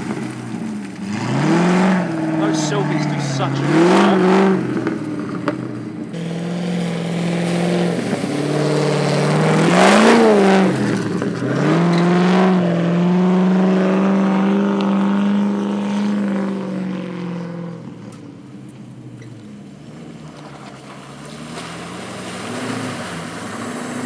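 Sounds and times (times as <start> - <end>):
engine revving under load: 0.0 - 18.0.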